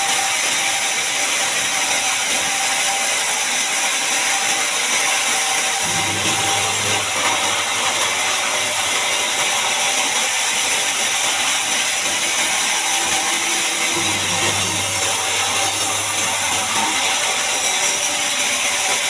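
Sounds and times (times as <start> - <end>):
band saw cutting log: 0.0 - 19.0
low machine hum: 5.8 - 9.6, 12.9 - 17.3.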